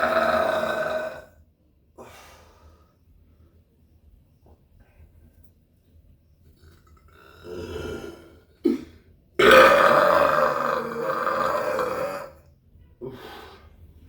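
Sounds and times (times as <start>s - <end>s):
man belching: 0.0s - 1.3s, 7.4s - 12.4s.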